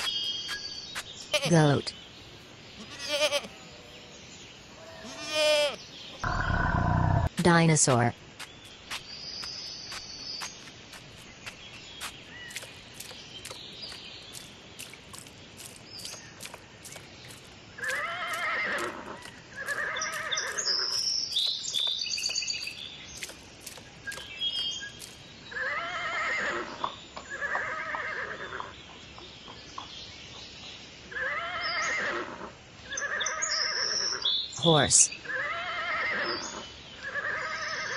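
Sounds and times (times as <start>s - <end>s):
horse neighing: 2.8s - 3.5s, 4.8s - 7.3s, 35.3s - 36.4s.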